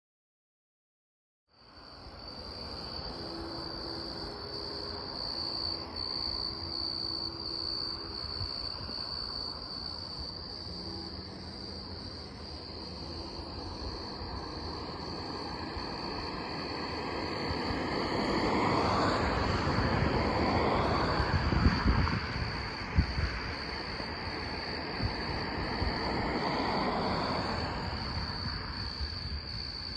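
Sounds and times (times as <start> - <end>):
rushing noise: 2.1 - 29.9
distant locomotive horn blasts: 3.2 - 8.4, 10.7 - 12.0.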